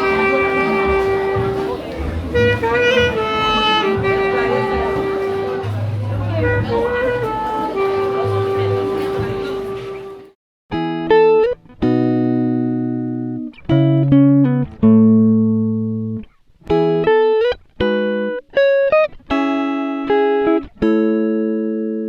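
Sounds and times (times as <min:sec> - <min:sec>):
plucked chords ringing: 0:00.0 - 0:13.9.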